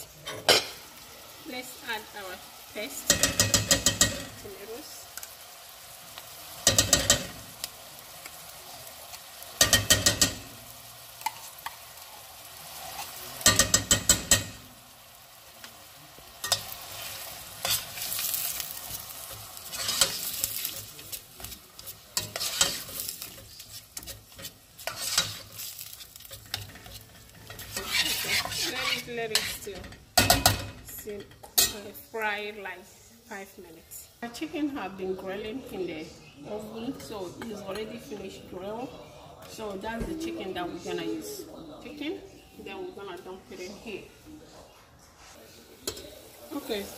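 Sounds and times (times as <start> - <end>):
tomato paste sizzling in oil: 0.0 - 44.6, 45.2 - 46.9
spoon scraping and knocking pot: 3.0 - 4.4, 9.6 - 10.5, 13.4 - 14.6, 17.6 - 31.8.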